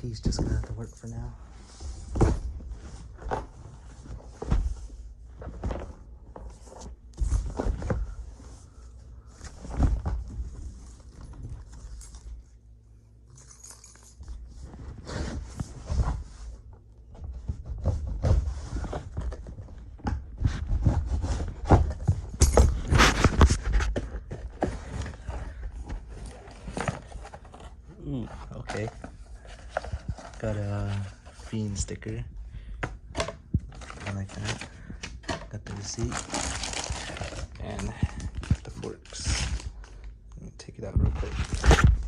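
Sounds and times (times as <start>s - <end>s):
cardboard box scraping and tearing: 22.9s - 23.8s.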